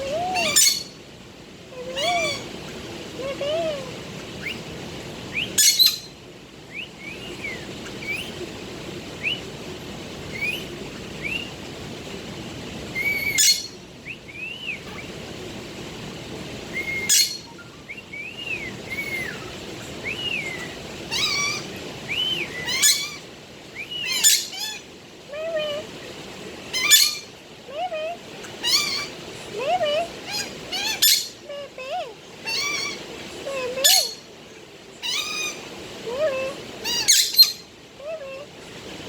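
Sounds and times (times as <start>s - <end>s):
parakeet chirping and warbling: 0.0s - 1.0s, 1.8s - 9.5s, 10.2s - 11.6s, 12.9s - 15.2s, 16.7s - 24.8s, 26.7s - 27.3s, 28.4s - 29.2s, 30.1s - 31.4s, 32.4s - 34.3s, 35.0s - 35.6s, 36.8s - 37.7s
parakeet sharp calls: 0.2s - 1.0s, 1.8s - 4.7s, 5.3s - 6.2s, 6.8s - 8.6s, 13.0s - 13.8s, 16.7s - 17.8s, 18.6s - 23.3s, 23.9s - 24.8s, 26.7s - 27.3s, 28.4s - 29.2s, 30.2s - 31.4s, 32.4s - 33.0s, 36.8s - 37.7s.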